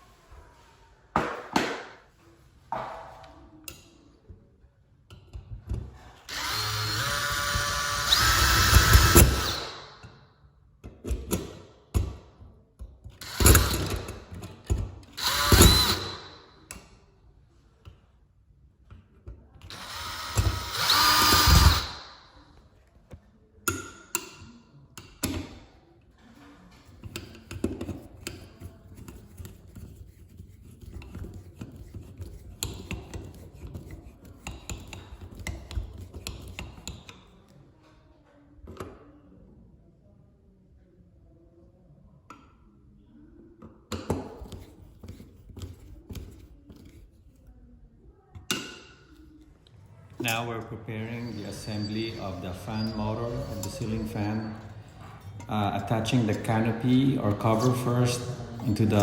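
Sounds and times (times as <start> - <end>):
power drill driving screws: 6.3 - 9.9, 13.2 - 14.2, 15.2 - 16.4, 19.7 - 22.2.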